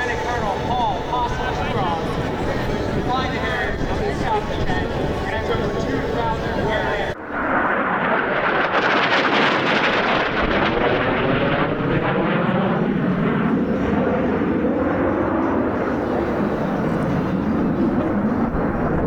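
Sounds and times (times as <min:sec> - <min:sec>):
jet passing overhead: 0:00.0 - 0:19.0.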